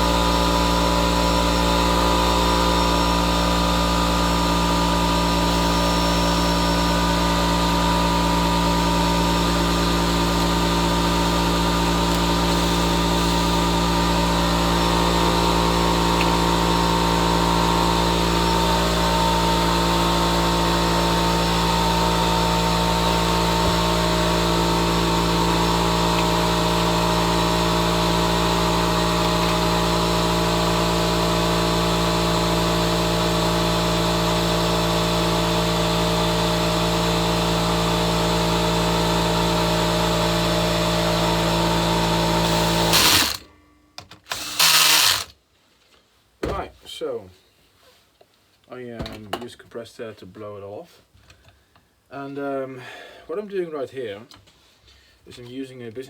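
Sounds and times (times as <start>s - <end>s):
air compressor humming: 0.0s - 43.6s, 44.2s - 45.3s.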